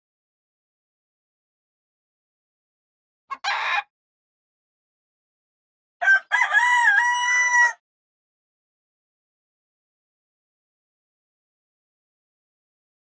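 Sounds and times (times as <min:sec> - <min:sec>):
rooster crowing: 0:06.0 - 0:07.8.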